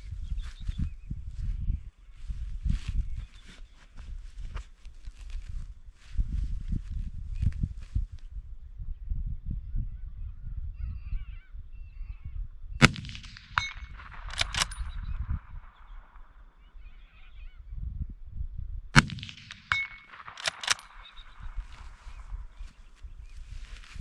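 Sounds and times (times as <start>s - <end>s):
rifle bolt clicks: 12.8s - 15.0s, 19.0s - 22.8s
rifle shots: 12.8s - 16.3s, 19.0s - 23.0s
metallic ring of steel target: 19.5s - 22.3s.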